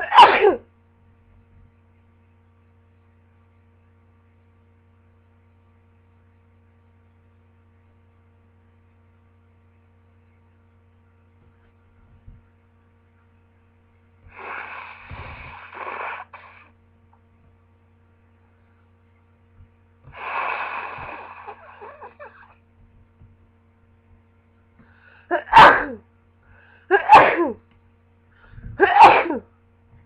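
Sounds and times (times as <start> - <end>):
electrical hum: 0.0 - 30.0
person blowing nose: 14.3 - 16.7, 20.1 - 22.4.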